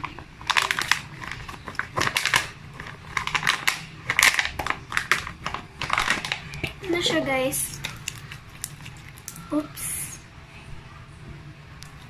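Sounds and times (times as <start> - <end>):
slime squished wet crackling: 7.6 - 9.6.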